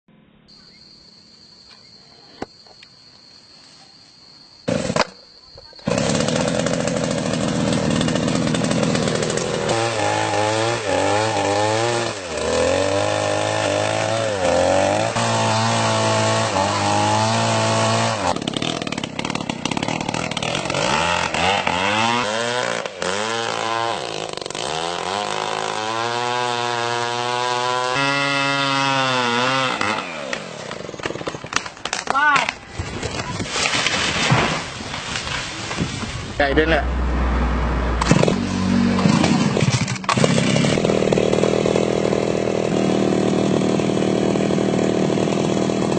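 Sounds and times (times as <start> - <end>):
two-stroke engine revving: 5.8 - 31.4, 36.4 - 45.9.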